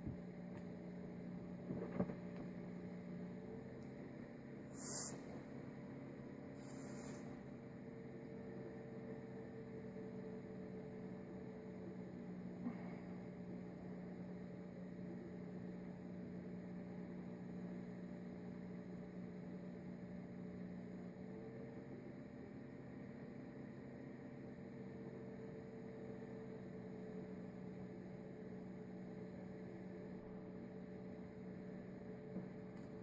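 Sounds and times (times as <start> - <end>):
low electrical hum: 0.0 - 33.0
brief hiss: 4.7 - 5.3, 6.6 - 7.3.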